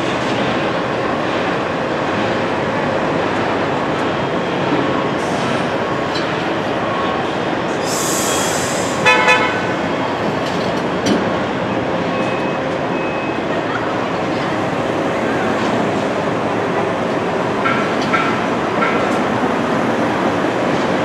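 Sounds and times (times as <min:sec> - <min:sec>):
train rumbling: 0:00.0 - 0:21.0
hiss: 0:07.8 - 0:09.0
train horn toots: 0:09.0 - 0:09.8.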